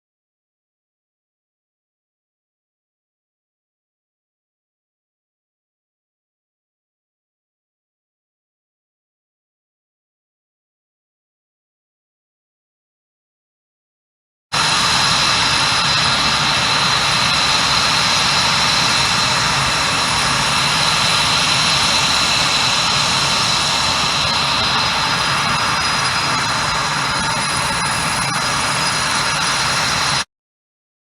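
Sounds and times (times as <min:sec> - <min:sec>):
jet engine rushing and whining: 0:14.6 - 0:30.3.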